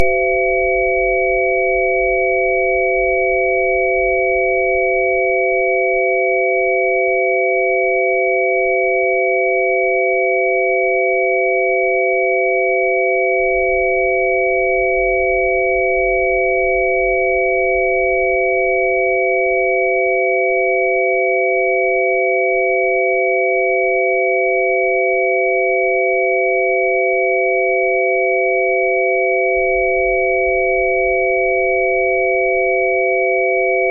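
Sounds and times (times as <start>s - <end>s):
steady pure tones: 0.0s - 5.3s.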